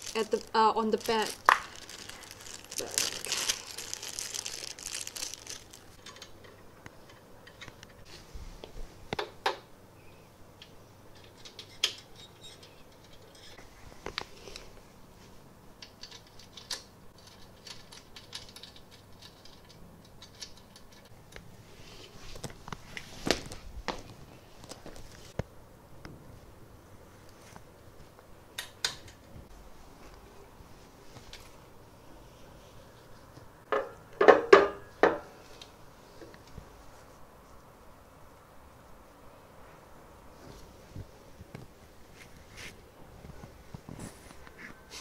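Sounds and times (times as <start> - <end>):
rustling: 0.0 - 6.0, 40.3 - 45.0.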